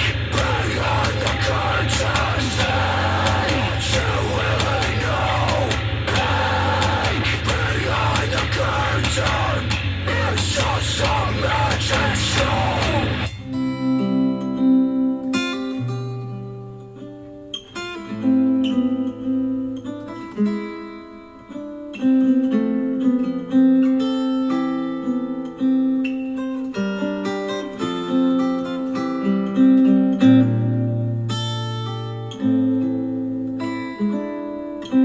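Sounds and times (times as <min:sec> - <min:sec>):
acoustic guitar music from speaker: 0:00.0 - 0:35.0.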